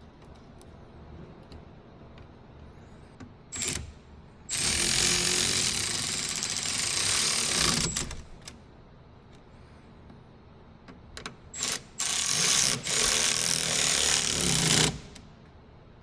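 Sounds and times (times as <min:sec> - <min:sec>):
power tool whining and rattling: 0:04.5 - 0:08.2, 0:11.6 - 0:15.2.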